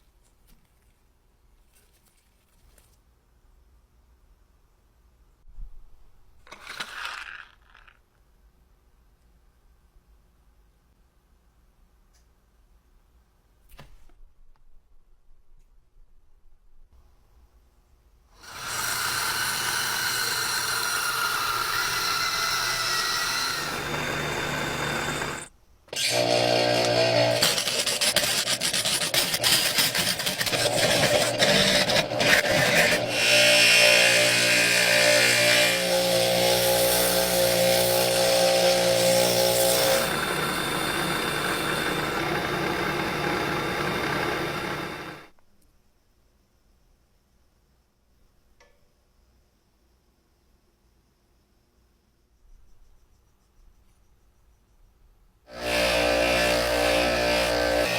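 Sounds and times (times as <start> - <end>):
power tool whining: 18.4 - 45.3, 55.5 - 57.9
grinding or rubbing: 26.9 - 34.3, 38.1 - 45.3.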